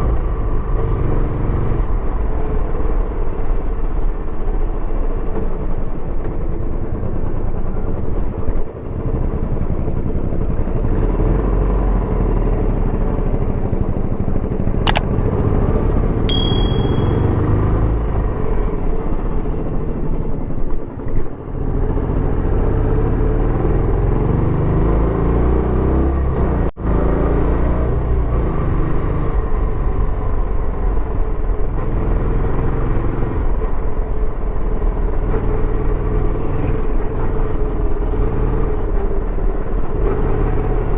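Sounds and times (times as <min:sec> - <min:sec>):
sharp click: 0:14.9 - 0:15.1, 0:16.3 - 0:17.4
short high beep: 0:16.3 - 0:17.5.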